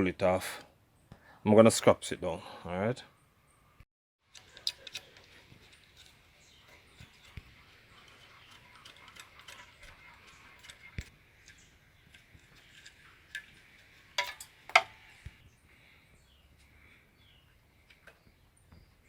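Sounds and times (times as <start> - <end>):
hand tools tapping on metal: 14.2 - 15.0.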